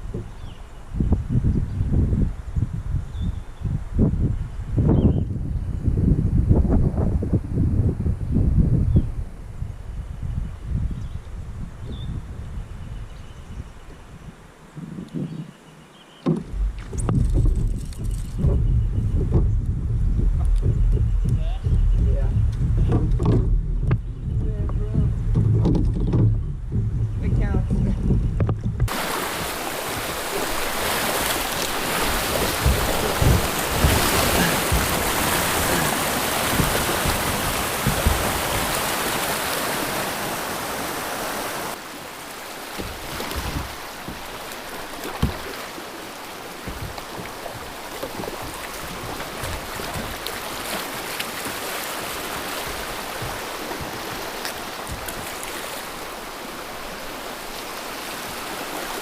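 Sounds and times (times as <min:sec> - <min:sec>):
low thumps: 0:16.2 - 0:39.3, 0:46.6 - 0:50.4, 0:52.6 - 0:55.3
river water rushing: 0:28.9 - 0:59.0.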